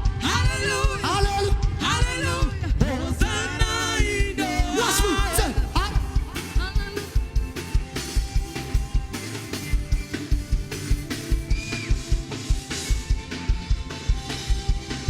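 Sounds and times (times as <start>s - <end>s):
drum kit beat: 0.0s - 15.0s
live band music: 0.0s - 15.0s.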